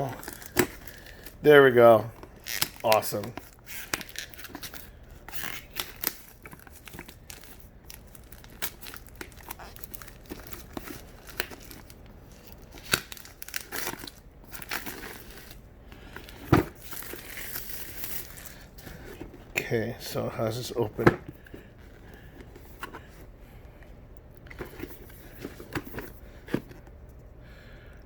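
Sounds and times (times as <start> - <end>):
packaging crinkling: 0.0 - 19.4, 24.5 - 26.8.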